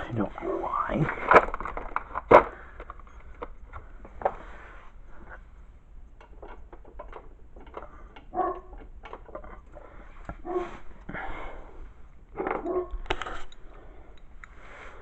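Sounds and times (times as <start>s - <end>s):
dog barking deeply: 0.3s - 0.9s, 8.3s - 8.8s, 10.4s - 10.8s, 12.5s - 13.0s
light clicks and knocks: 6.0s - 10.4s.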